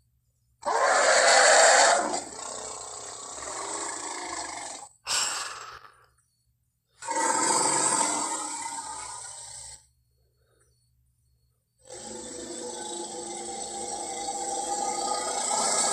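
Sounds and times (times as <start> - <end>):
rough creature calls: 0.6 - 4.9, 7.0 - 9.8, 11.9 - 15.9.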